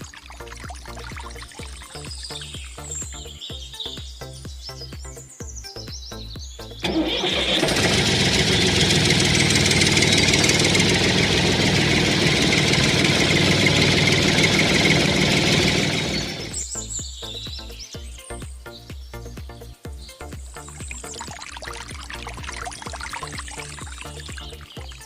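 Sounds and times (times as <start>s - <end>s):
background music: 0.0s - 9.8s, 15.0s - 25.0s
engine running: 6.8s - 16.6s, 21.0s - 24.6s.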